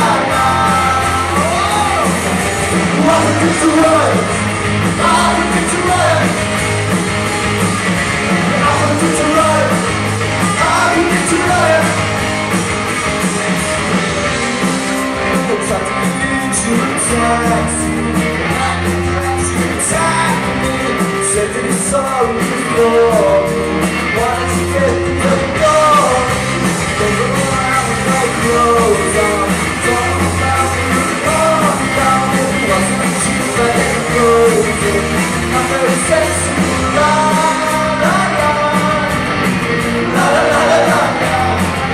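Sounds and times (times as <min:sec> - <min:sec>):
person singing: 0:00.0 - 0:06.4, 0:10.5 - 0:12.2, 0:15.3 - 0:39.3
guitar: 0:00.0 - 0:41.9.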